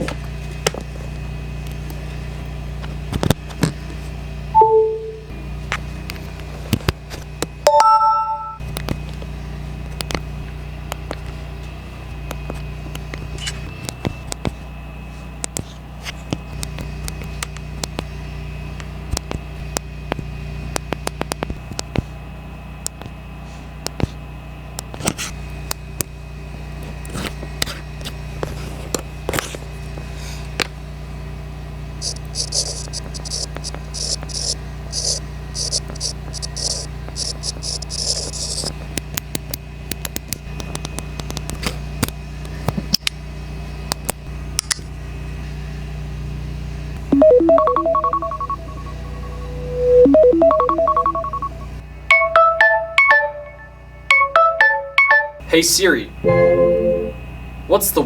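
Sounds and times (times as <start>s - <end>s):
electronic beeps: 4.6s - 5.3s, 7.7s - 8.6s, 32.0s - 38.7s, 47.1s - 55.5s, 56.2s - 57.2s
steady low hum: 29.8s - 41.9s, 46.9s - 58.0s.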